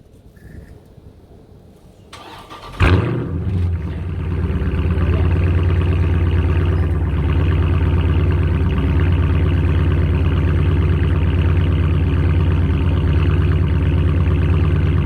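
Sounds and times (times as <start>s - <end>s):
car engine starting and idling: 2.0s - 15.0s.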